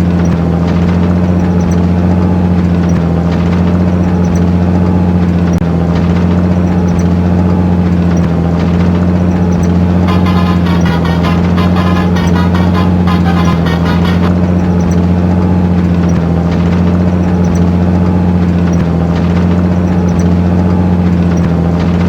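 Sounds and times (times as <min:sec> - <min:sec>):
fast high-pitched pattern: 0:10.0 - 0:14.4
truck engine idling: 0:10.0 - 0:14.6.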